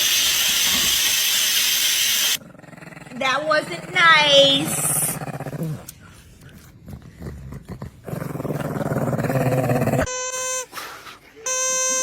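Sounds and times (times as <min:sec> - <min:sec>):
dog growling: 0:02.4 - 0:10.1.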